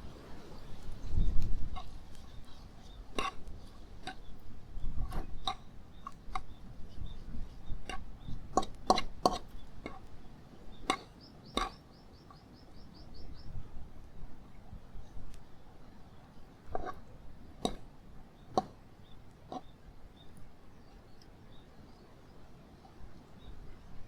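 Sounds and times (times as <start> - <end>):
bird chirping: 9.4 - 13.6.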